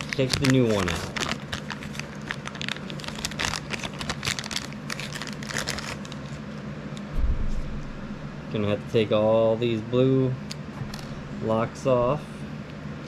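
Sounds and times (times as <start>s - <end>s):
plastic packaging crinkling: 0.0s - 6.4s
steady low hum: 0.0s - 13.0s.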